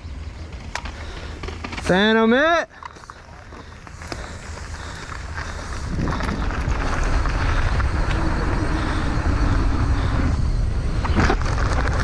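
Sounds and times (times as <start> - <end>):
bike tyres rolling on dirt: 0.0 - 12.0
wind buffeting microphone: 3.0 - 12.0.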